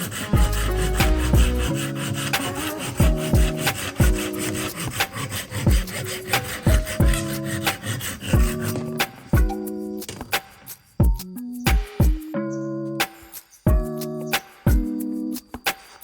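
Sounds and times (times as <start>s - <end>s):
held synth chords: 0.0s - 4.2s
deep kick drums: 0.4s - 1.7s, 3.0s - 4.2s.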